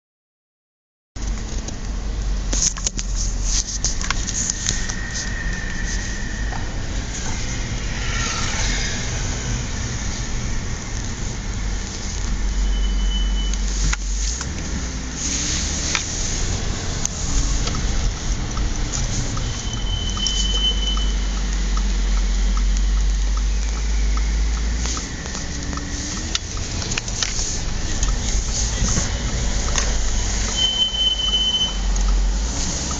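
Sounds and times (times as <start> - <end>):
car driving with road noise: 1.2 - 32.9
brakes squealing: 2.0 - 32.9.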